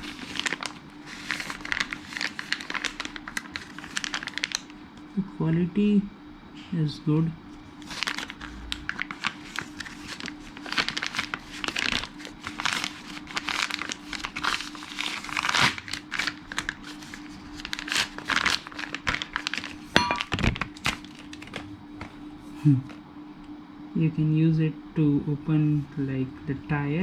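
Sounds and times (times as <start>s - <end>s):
packaging crinkling and rustling: 0.0s - 4.8s, 7.7s - 23.0s.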